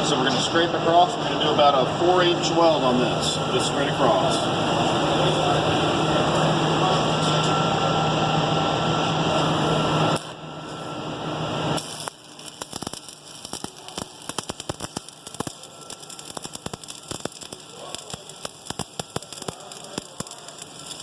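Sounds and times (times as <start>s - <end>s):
welding arc crackling: 9.2s - 21.0s.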